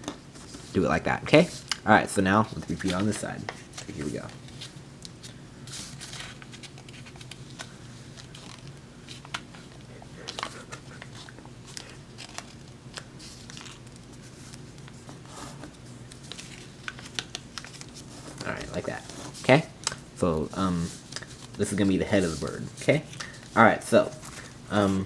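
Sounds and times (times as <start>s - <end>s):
steady low hum: 0.0s - 25.0s
paper crinkling and crackling: 0.4s - 25.0s.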